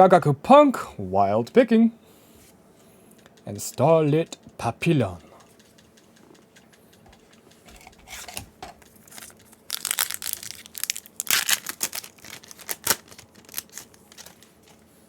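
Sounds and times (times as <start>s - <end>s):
foil wrapper crinkling: 8.1s - 14.9s.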